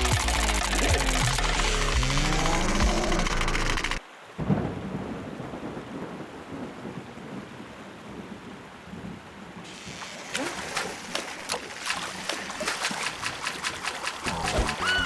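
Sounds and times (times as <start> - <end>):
rain hiss: 0.0 - 7.4, 9.6 - 15.0
thunder rumble: 1.8 - 8.3
cartoon music: 14.3 - 15.0.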